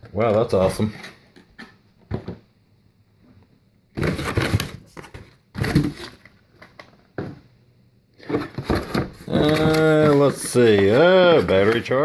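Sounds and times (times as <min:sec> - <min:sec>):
cardboard rustling and knocking: 0:04.0 - 0:07.5, 0:08.2 - 0:12.0.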